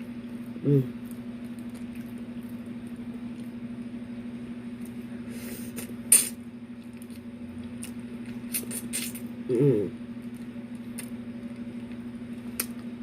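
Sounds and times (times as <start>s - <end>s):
close chewing: 0.2s - 3.6s.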